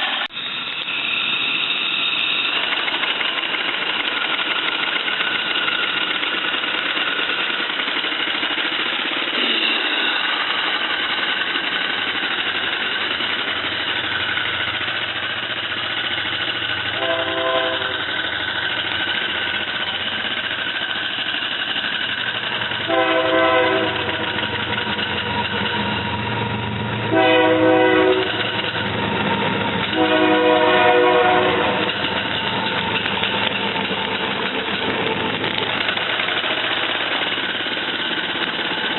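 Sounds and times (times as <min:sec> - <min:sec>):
steam engine running: 0:00.0 - 0:38.9
steam whistle blasts: 0:16.9 - 0:18.1, 0:22.8 - 0:24.4, 0:27.1 - 0:28.5, 0:29.9 - 0:31.9.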